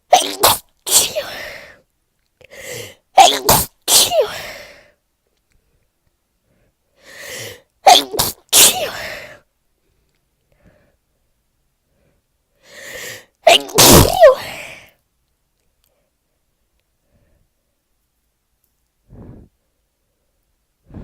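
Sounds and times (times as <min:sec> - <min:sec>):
person sneezing: 0:00.0 - 0:01.8, 0:02.5 - 0:04.8, 0:07.2 - 0:09.4, 0:12.9 - 0:14.9
breathy intake of breath: 0:02.5 - 0:03.0, 0:06.5 - 0:07.7, 0:11.9 - 0:13.3, 0:19.1 - 0:19.7.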